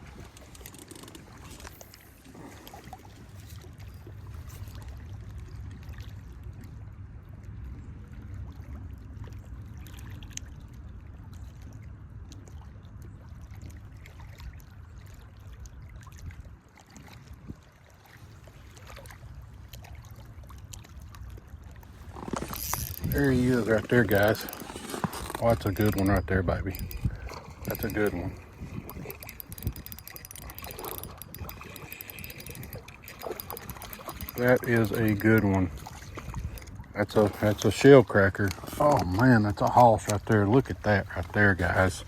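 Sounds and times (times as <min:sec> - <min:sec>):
water trickling and lapping: 0:00.0 - 0:42.0
small clicks: 0:22.1 - 0:36.7.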